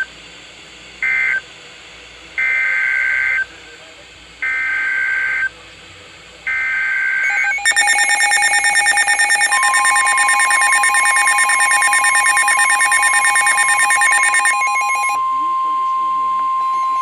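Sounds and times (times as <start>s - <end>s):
rapid pulsing alarm beeps: 6.5s - 15.8s, 16.4s - 17.0s
steady warning alarm tone: 6.5s - 17.0s
two-pitch data burst warble: 7.3s - 15.2s, 16.6s - 17.0s.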